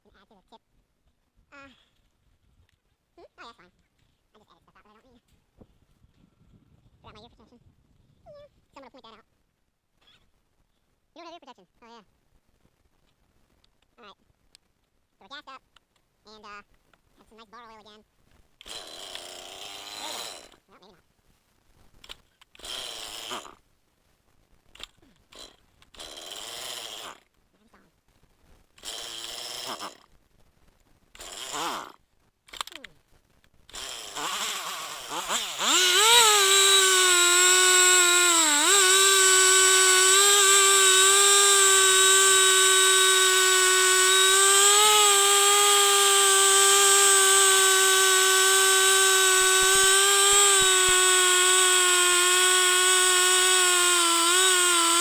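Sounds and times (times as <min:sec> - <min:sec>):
chainsaw engine revving: 0:18.6 - 0:20.6, 0:22.0 - 0:23.6, 0:24.8 - 0:27.3, 0:28.8 - 0:30.1, 0:31.1 - 0:32.8, 0:33.7 - 0:55.0
chainsaw starter cord pulls: 0:18.6 - 0:20.6, 0:22.0 - 0:23.6, 0:24.7 - 0:27.4, 0:28.8 - 0:30.1, 0:31.1 - 0:32.9, 0:33.7 - 0:55.0.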